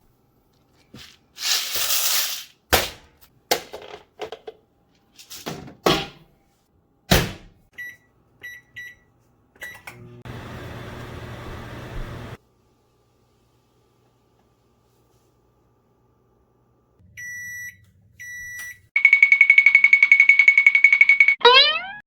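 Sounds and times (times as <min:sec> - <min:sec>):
popcorn bag rustling: 0:00.7 - 0:02.6
microwave oven humming: 0:07.8 - 0:14.5.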